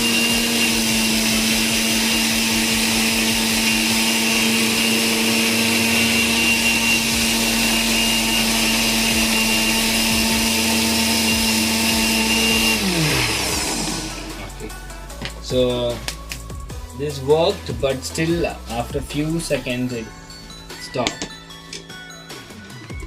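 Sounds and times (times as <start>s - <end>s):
mixer grinder motor whining: 0.0s - 15.7s.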